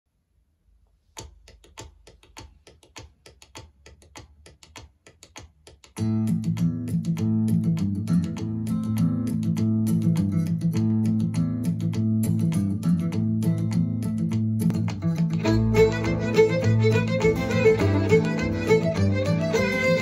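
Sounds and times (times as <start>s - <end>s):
light ticking beat: 1.2s - 20.0s
music with guitar and bass: 6.0s - 20.0s.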